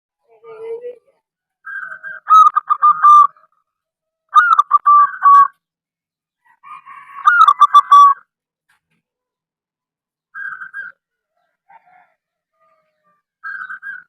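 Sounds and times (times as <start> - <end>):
dove cooing: 1.7 - 3.5, 4.4 - 5.5, 7.2 - 8.2.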